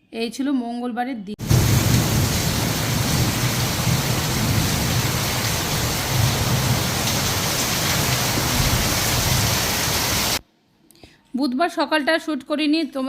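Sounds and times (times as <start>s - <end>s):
heavy rain pouring: 1.4s - 10.4s.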